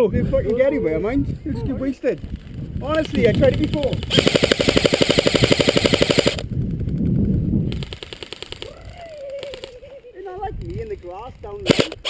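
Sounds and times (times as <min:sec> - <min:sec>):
airsoft rifle automatic fire: 0:03.4 - 0:06.5, 0:07.7 - 0:08.7, 0:11.6 - 0:12.0.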